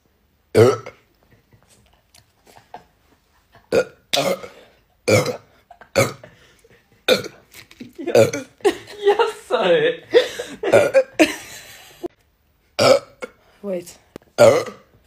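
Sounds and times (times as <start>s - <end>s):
person burping: 0.5s - 1.1s, 3.7s - 6.4s, 7.1s - 8.7s, 10.6s - 11.4s, 12.8s - 13.4s, 14.3s - 15.0s.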